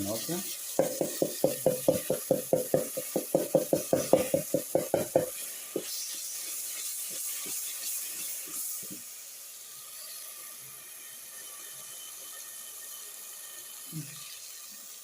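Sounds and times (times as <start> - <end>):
food sizzling: 0.0 - 15.0
spoon knocking against pot: 0.8 - 5.9.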